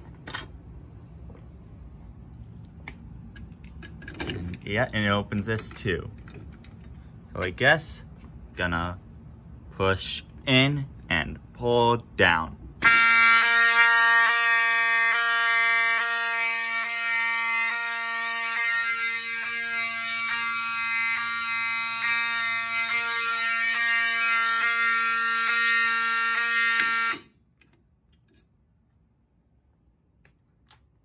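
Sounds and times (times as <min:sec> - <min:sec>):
fire alarm horns blaring: 0:12.8 - 0:27.4.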